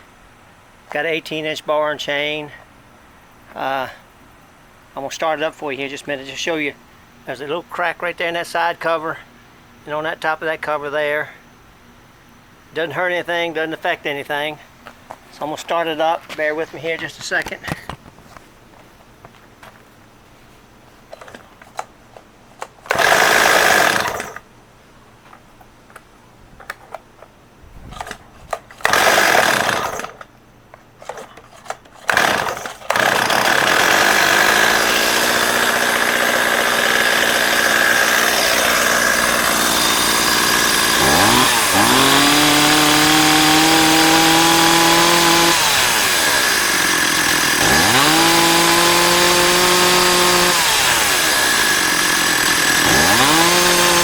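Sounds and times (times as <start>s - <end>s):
chainsaw pull-start bursts: 22.6s - 24.5s, 28.8s - 30.3s, 31.7s - 54.0s
chainsaw idling and revving: 22.9s - 24.4s, 28.8s - 30.2s, 32.1s - 54.0s.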